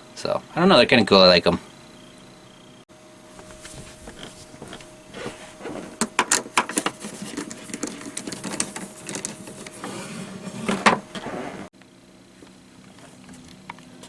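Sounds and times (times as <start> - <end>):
small objects clicking and rustling: 5.7 - 9.9.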